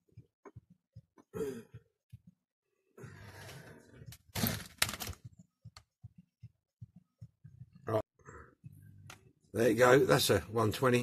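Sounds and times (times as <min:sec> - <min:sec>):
objects clattering and knocking: 0:03.4 - 0:05.3.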